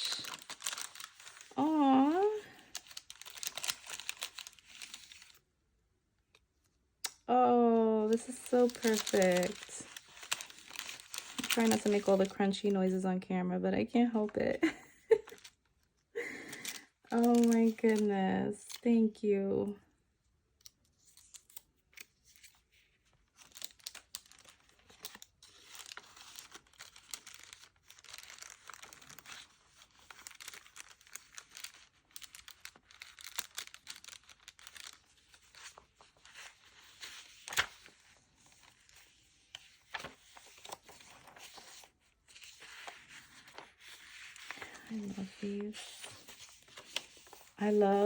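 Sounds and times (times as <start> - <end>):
paper crinkling and rustling: 0.0 - 5.4, 7.5 - 13.0, 14.2 - 19.2, 20.6 - 48.0
paper snap: 35.6 - 37.9.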